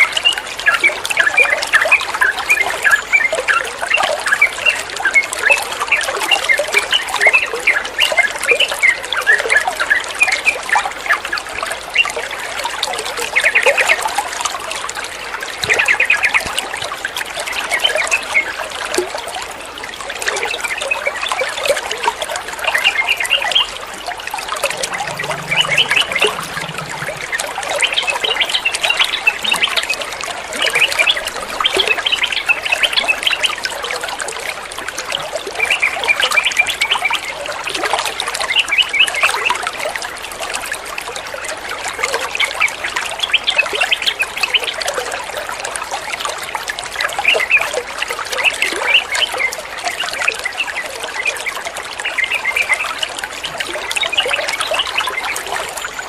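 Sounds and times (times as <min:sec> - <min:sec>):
running water trickling: 0:00.0 - 0:36.1.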